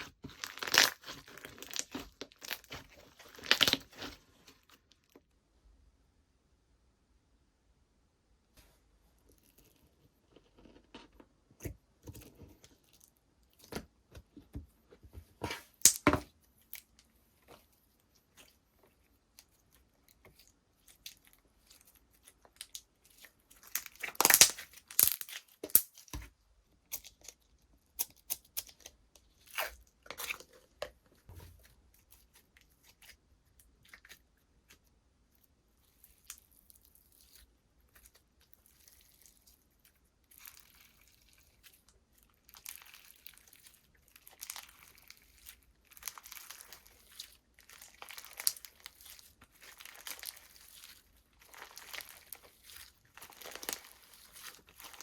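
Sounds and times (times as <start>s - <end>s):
slime clicks and crackles: 22.2s - 26.2s, 42.5s - 55.0s.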